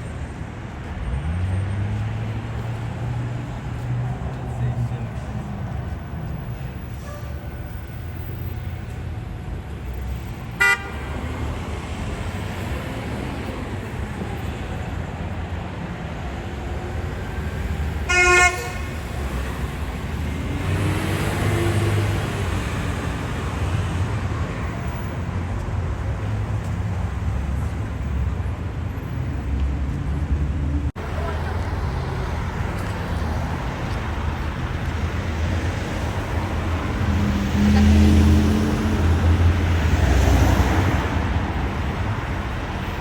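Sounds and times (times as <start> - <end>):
street traffic rumble: 0.0 - 43.0
car horn tooting: 10.6 - 11.1, 18.1 - 19.0
vehicle passing by: 18.7 - 28.5, 29.1 - 43.0.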